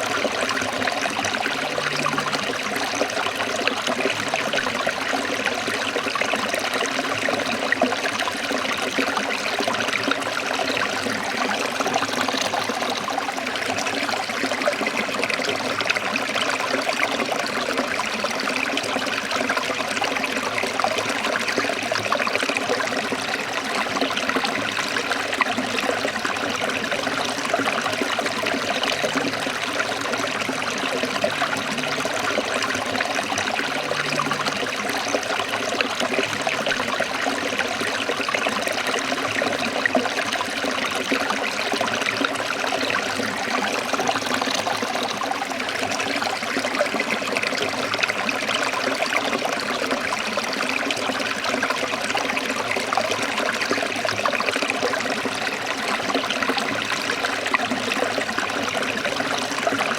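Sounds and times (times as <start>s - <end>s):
stream babbling over rocks: 0.0s - 59.9s.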